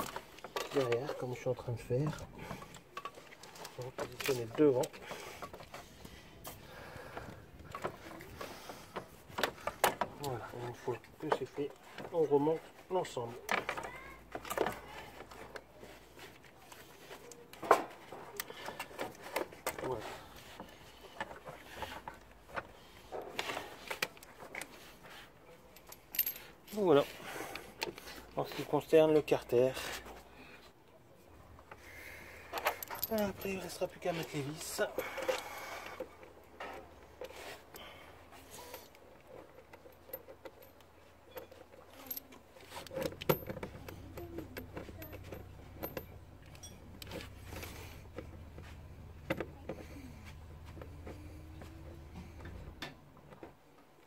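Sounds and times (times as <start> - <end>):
metallic clinks of screws and tool: 25.6 - 26.9, 32.5 - 47.8.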